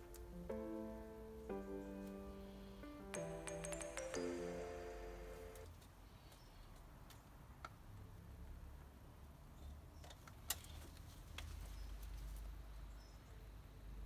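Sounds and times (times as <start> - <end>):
tools clicking and tapping: 3.1 - 4.4.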